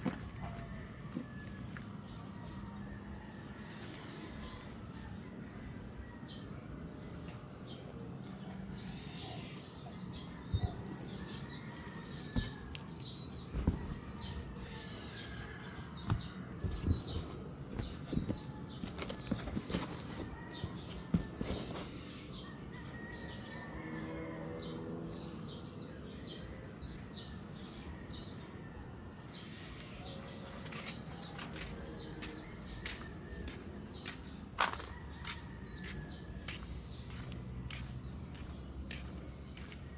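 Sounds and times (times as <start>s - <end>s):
birds chirping: 29.5s - 39.9s.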